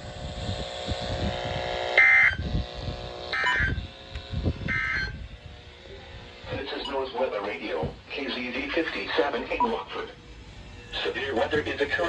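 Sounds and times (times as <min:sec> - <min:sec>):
low steady buzz: 0:00.0 - 0:12.0
digital data squawks: 0:03.3 - 0:03.8, 0:04.7 - 0:05.2.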